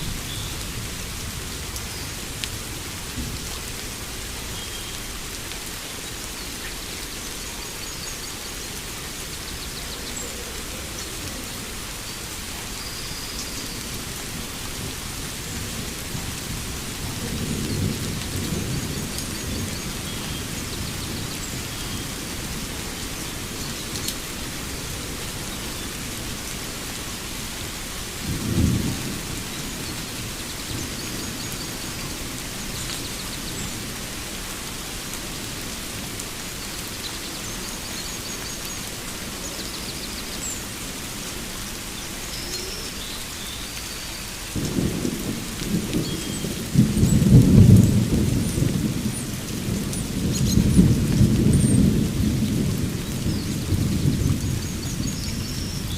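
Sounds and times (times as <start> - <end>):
steady rain: 0.0 - 55.9
thunder rumbling: 44.5 - 55.9.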